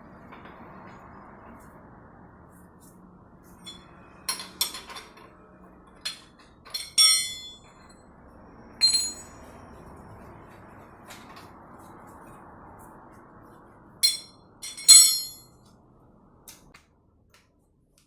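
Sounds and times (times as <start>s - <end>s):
metal tools clinking: 3.7s - 5.1s, 6.1s - 7.8s, 8.8s - 9.4s, 14.0s - 15.4s.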